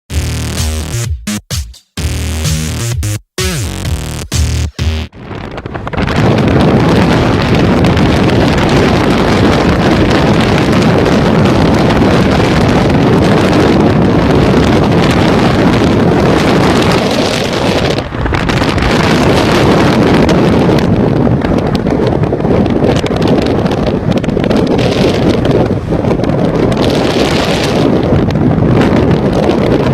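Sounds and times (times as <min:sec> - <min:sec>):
wind buffeting a microphone: 0:05.1 - 0:29.9.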